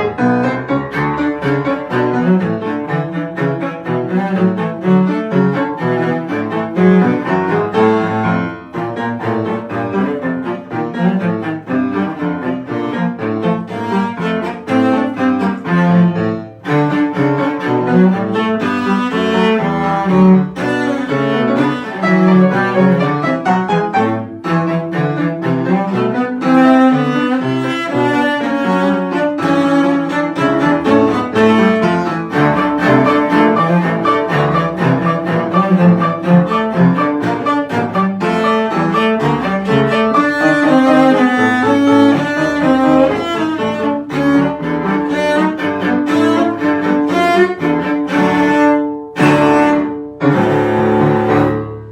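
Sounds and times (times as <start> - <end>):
cello playing: 0.0 - 51.9.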